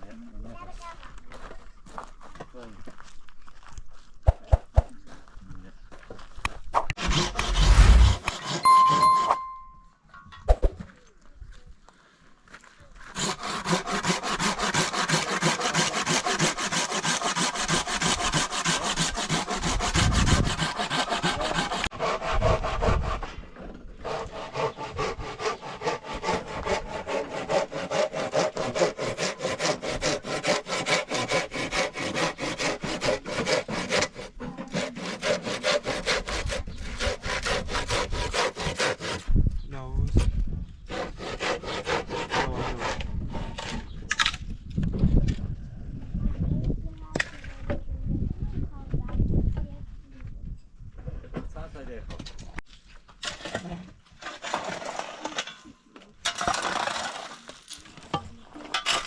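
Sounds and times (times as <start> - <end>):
wood being sawn: 7.0 - 8.7, 13.1 - 23.3, 24.0 - 39.2, 40.9 - 43.8.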